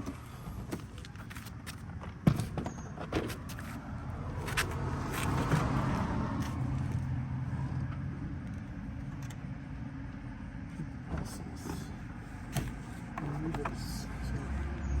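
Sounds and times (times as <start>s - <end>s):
car passing rumble: 3.3s - 9.8s.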